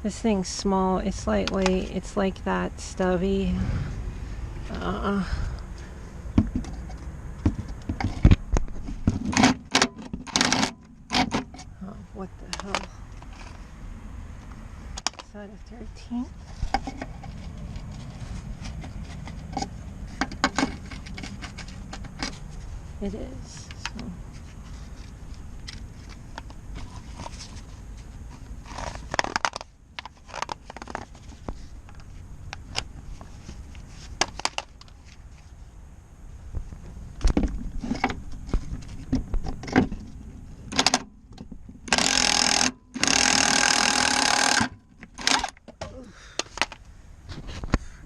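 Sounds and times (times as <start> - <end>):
cordless impact wrench hammering: 41.9 - 45.6.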